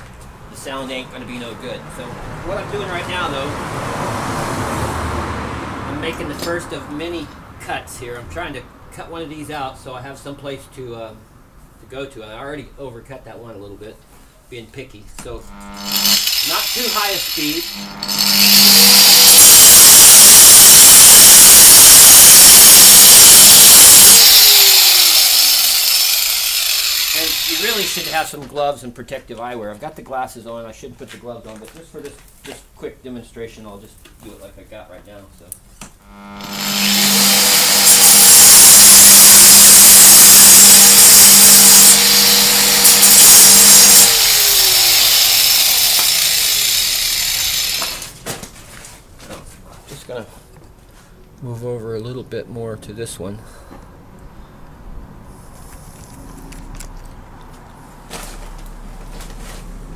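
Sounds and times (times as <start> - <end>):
motor winding down whine: 15.4 - 28.2, 36.0 - 48.1
power cutter grinding concrete: 15.5 - 28.3, 36.0 - 48.1.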